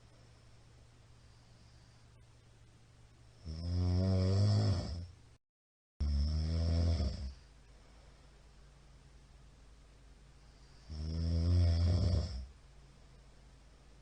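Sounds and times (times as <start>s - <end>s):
man snoring loudly: 3.4s - 5.1s, 6.0s - 7.4s, 10.8s - 12.5s.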